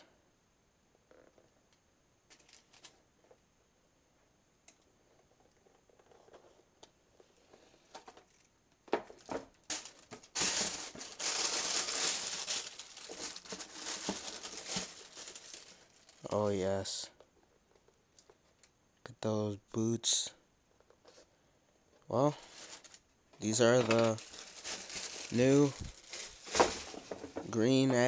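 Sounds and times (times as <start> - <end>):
packaging crinkling and rustling: 9.0 - 16.4, 22.3 - 27.6.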